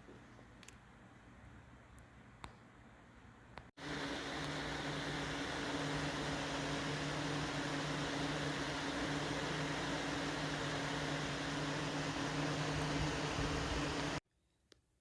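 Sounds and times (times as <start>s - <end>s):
box fan running: 3.8s - 14.2s.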